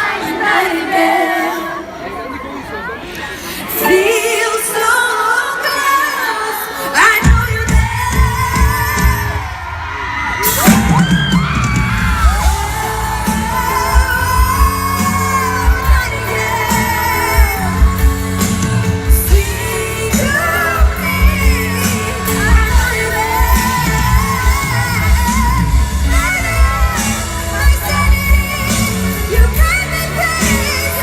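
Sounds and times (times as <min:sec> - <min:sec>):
woman singing pop ballad: 0:03.7 - 0:09.8, 0:10.4 - 0:31.0
backing track: 0:07.2 - 0:31.0
steady low drum beat: 0:10.6 - 0:31.0.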